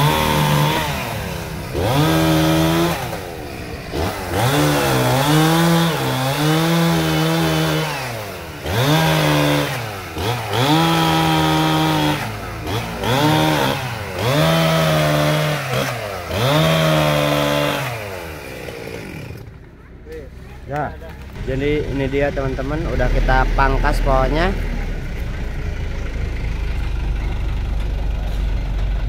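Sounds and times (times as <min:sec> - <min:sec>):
chainsaw engine revving: 0:00.0 - 0:19.6.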